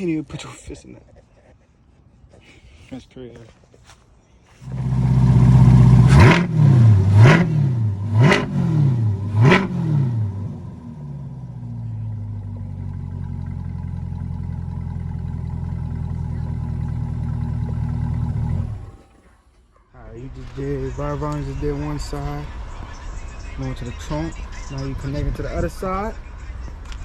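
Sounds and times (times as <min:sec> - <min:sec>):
car engine revving and idling: 0:04.6 - 0:19.0.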